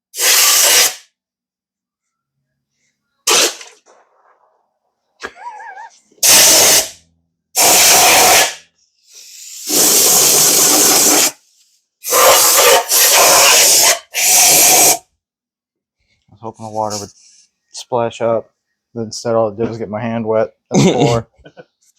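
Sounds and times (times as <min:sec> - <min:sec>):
air blow gun hissing bursts: 0:00.1 - 0:01.1, 0:06.2 - 0:07.0, 0:07.6 - 0:11.4, 0:12.0 - 0:15.0.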